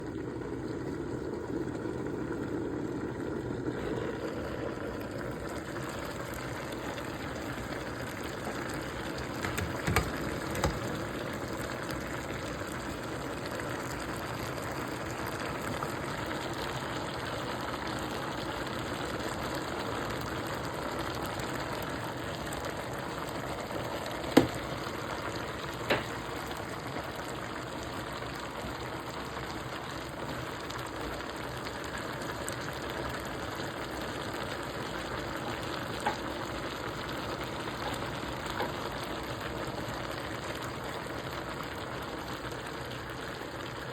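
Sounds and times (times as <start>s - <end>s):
vegetables sizzling in a pan: 0.2s - 43.9s
sharp knocks: 9.4s - 11.0s.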